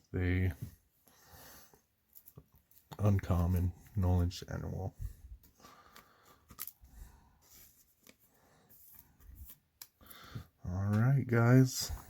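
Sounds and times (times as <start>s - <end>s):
trading cards clicking and rustling: 5.4s - 6.9s.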